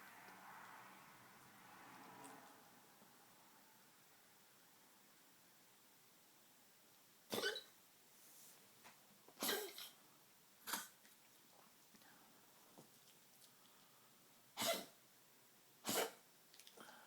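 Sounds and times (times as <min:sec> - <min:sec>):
dog coughing: 0:07.3 - 0:07.7, 0:09.4 - 0:10.0, 0:10.6 - 0:11.0, 0:14.6 - 0:15.0, 0:15.8 - 0:16.2.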